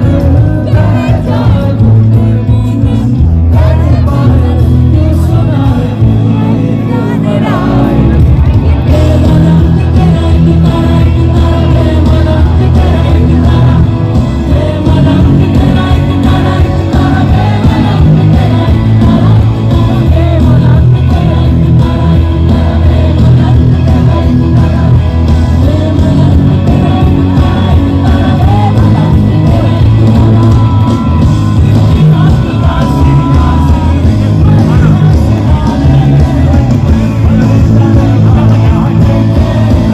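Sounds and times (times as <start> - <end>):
live band with singer: 0.0 - 39.9.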